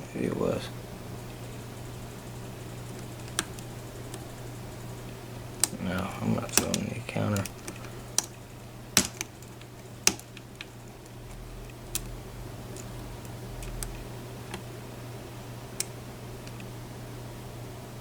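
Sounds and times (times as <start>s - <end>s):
lock pick metal clicks: 9.0s - 10.7s.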